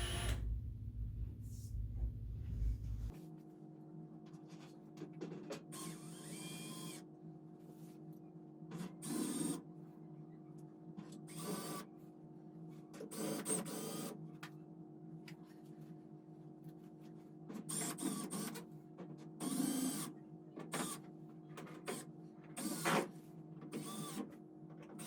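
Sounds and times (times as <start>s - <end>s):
powered screwdriver whirring: 0.0s - 0.4s
steady machine hum: 0.0s - 3.1s.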